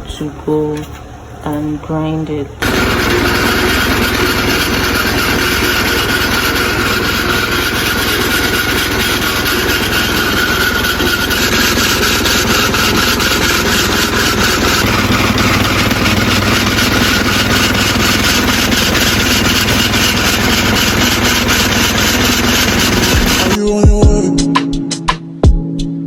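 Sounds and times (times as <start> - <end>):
grain mill engine humming: 0.0 - 23.6.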